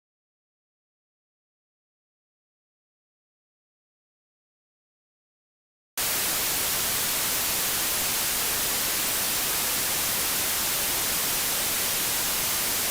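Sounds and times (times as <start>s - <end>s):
television static hiss: 6.0s - 12.9s.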